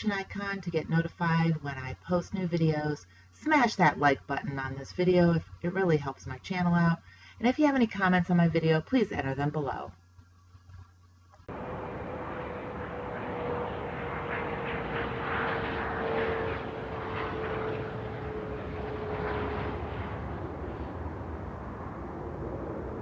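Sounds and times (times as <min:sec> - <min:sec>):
engine drone: 0:11.5 - 0:23.0.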